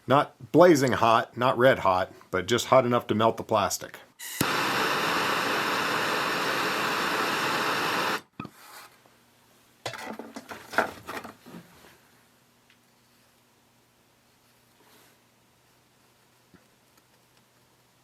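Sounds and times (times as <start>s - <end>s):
gas torch hissing: 4.2s - 8.3s.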